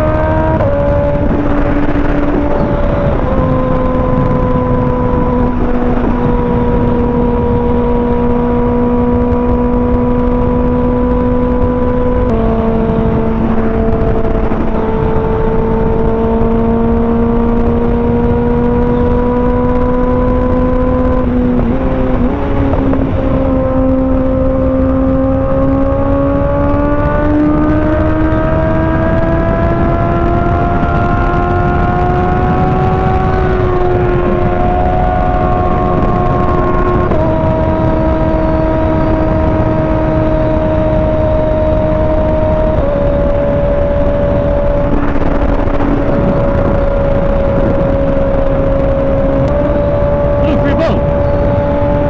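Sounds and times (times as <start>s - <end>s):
constant rushing noise: 0.0s - 52.0s
motorcycle engine cruising: 0.0s - 52.0s.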